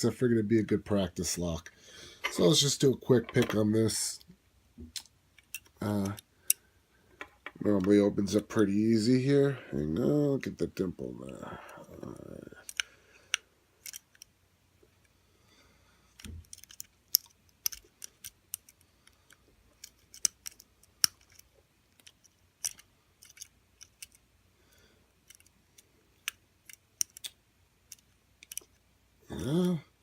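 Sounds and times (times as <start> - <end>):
metallic clicks of lock picking: 5.0 - 6.6, 12.6 - 12.9, 13.8 - 14.3, 16.2 - 24.2, 25.2 - 25.5, 26.2 - 28.8.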